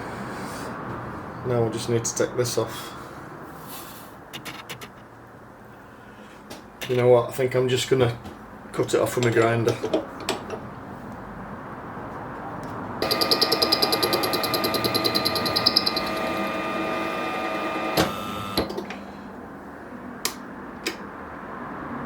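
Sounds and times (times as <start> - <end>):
power tool motor whining: 13.0 - 19.0.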